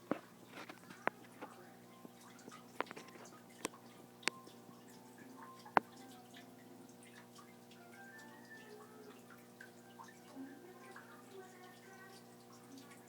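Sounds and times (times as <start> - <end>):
lizard crunching on food: 0.0 - 1.6
faint steady hum: 0.0 - 13.0.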